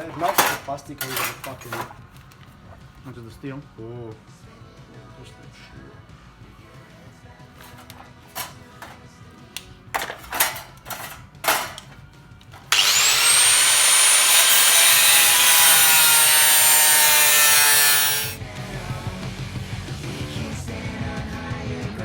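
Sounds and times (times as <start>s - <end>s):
power tool whining: 12.6s - 18.4s.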